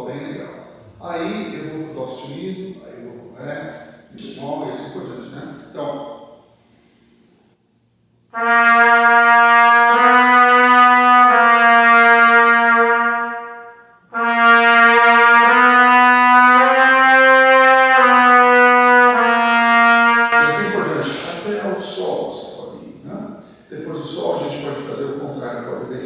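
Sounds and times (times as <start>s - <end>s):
trumpet playing slurred phrases: 0.0s - 2.6s, 8.3s - 22.6s.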